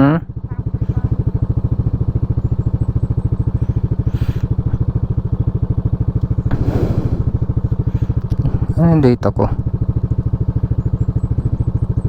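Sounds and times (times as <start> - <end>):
motorcycle engine idling: 0.0 - 12.0
short rushes of noise: 6.4 - 7.5.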